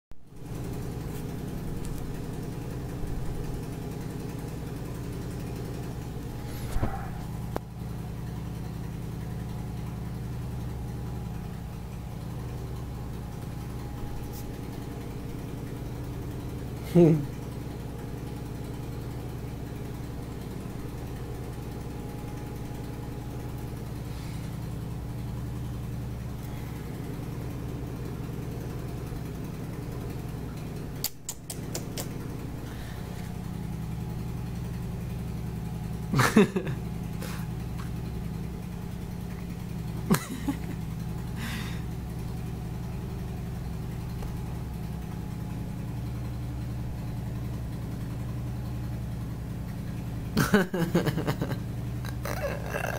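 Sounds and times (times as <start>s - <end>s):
low hum: 0.3s - 52.9s
clicks: 31.0s - 32.2s.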